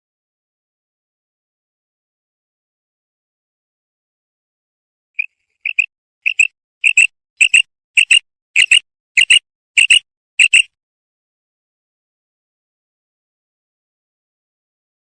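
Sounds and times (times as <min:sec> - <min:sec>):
quail calling: 0:05.2 - 0:10.7.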